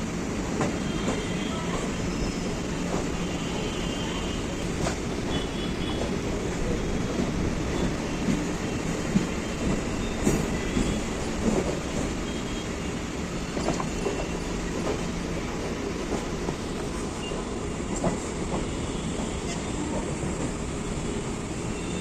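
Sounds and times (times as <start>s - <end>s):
train rumbling on track: 0.0s - 22.0s
faint high wheel squeals: 1.0s - 4.2s.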